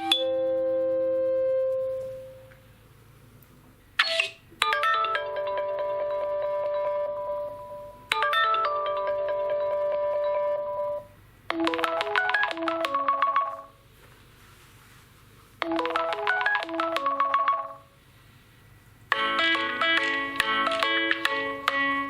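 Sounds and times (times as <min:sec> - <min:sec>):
melodic ringtone phrase: 0:00.0 - 0:01.0, 0:04.6 - 0:13.7, 0:15.6 - 0:17.9, 0:19.1 - 0:22.0
ringtone held chord: 0:00.0 - 0:02.4, 0:04.6 - 0:13.7, 0:15.6 - 0:17.9, 0:19.1 - 0:22.0.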